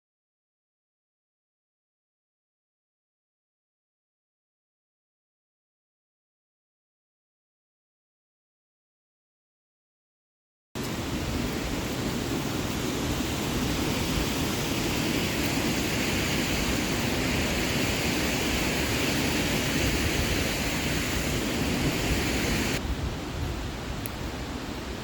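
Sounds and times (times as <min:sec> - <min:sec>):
waterfall roaring: 0:10.8 - 0:25.0.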